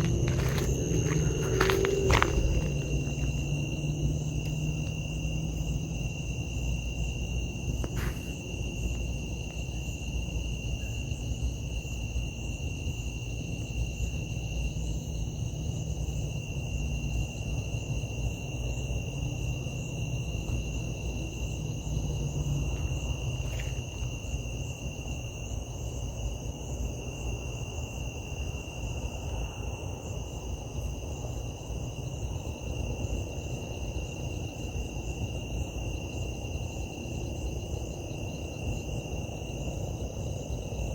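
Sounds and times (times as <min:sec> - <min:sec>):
low rumble: 0:00.0 - 0:05.0
insects droning: 0:00.0 - 0:40.9.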